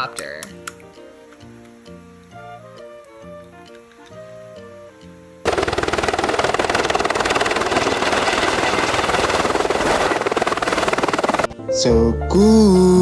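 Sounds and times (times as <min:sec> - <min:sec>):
light children's music: 0:00.0 - 0:05.4, 0:11.5 - 0:13.0
helicopter rotor chopping: 0:05.5 - 0:11.5.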